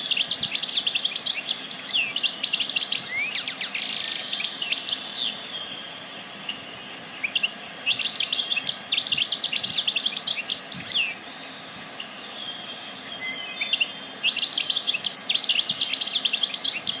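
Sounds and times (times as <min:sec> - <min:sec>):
songbirds twittering: 0:00.0 - 0:17.0
steady high-pitched hiss: 0:00.0 - 0:17.0.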